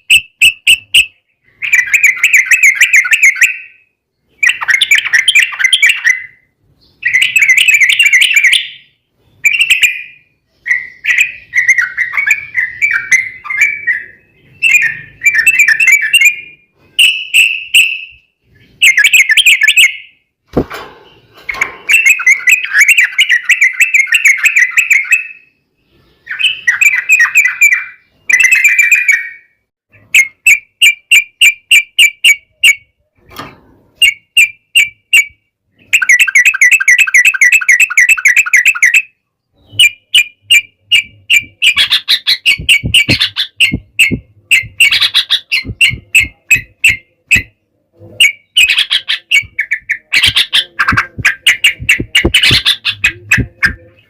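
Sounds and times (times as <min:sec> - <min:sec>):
bulbuls singing: 0:00.0 - 0:20.2, 0:21.0 - 0:33.0, 0:34.0 - 0:54.0
quick evenly spaced bird notes: 0:00.0 - 0:20.3, 0:21.0 - 0:32.8, 0:34.0 - 0:54.0
brief low thump: 0:20.5 - 0:21.8.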